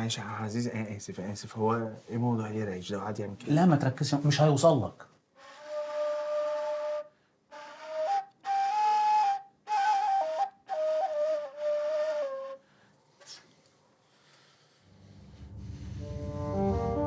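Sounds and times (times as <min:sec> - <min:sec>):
reed flute melody: 0:05.4 - 0:13.4, 0:15.3 - 0:17.0.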